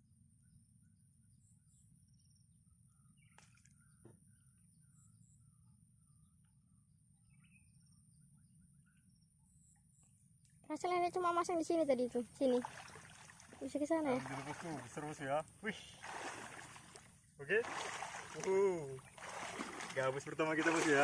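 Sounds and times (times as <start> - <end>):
faint bird chirps: 0.3 - 10.4.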